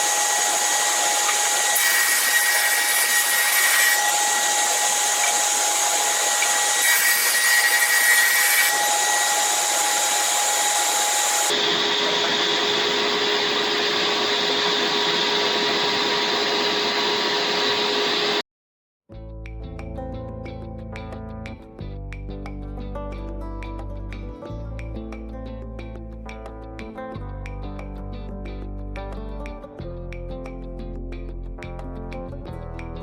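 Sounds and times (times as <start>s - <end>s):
woodshop machinery whining: 0.0s - 18.4s.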